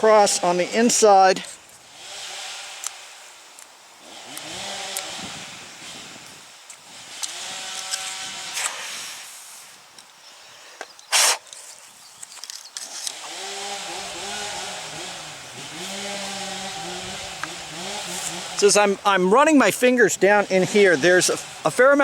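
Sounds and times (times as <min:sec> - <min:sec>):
small engine revving: 0:01.8 - 0:09.1, 0:12.8 - 0:19.0, 0:20.2 - 0:22.0.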